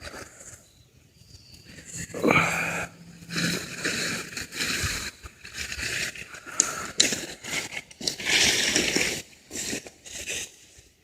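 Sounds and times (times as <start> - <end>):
dry leaves and twigs crunching: 1.3 - 10.8
twigs snapping: 5.4 - 9.8.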